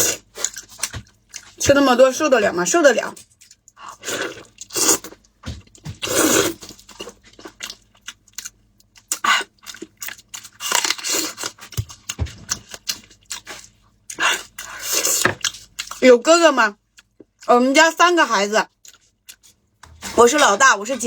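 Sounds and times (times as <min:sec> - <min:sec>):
food tearing and crinkling: 0:09.2 - 0:16.0.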